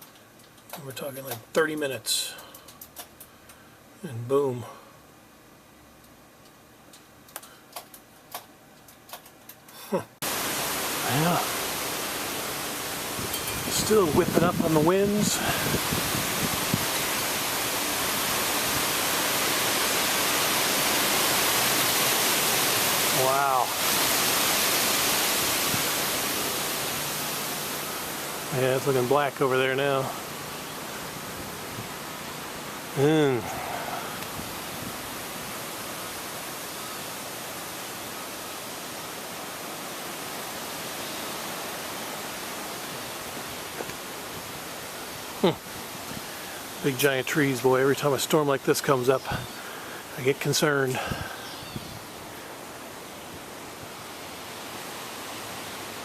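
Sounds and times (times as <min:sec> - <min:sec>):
storm wind rushing through trees: 0:10.2 - 0:56.0
strong storm wind: 0:13.1 - 0:17.5, 0:33.4 - 0:35.4, 0:51.0 - 0:52.3.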